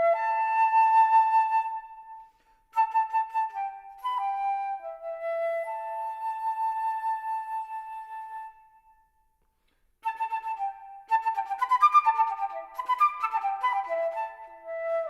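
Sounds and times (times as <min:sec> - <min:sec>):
solo flute playing: 0:00.0 - 0:09.3, 0:10.0 - 0:15.0.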